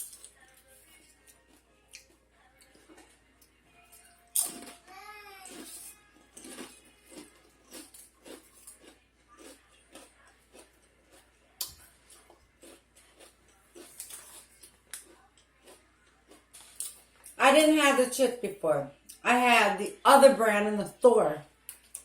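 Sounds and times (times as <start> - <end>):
person chewing crunchy chips: 0.0 - 4.8, 5.4 - 17.4.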